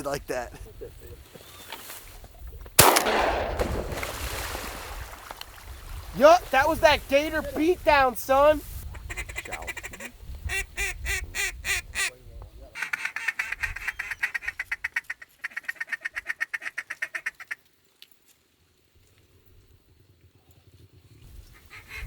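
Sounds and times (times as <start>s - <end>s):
ducks quacking: 8.9s - 12.1s, 12.8s - 17.6s.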